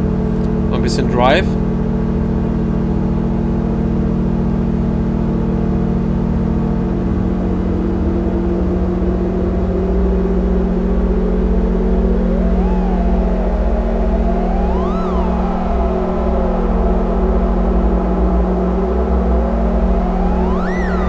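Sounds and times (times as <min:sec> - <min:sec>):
synthesizer drone: 0:09.5 - 0:21.0
pulsing synth bass: 0:10.0 - 0:21.0.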